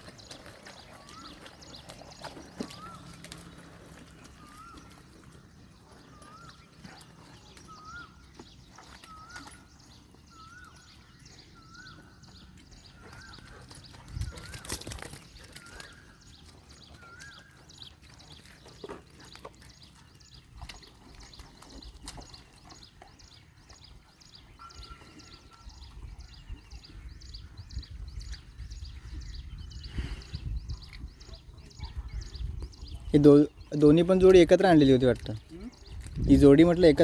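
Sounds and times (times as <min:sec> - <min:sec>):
birds chirping: 0:00.0 - 0:37.0.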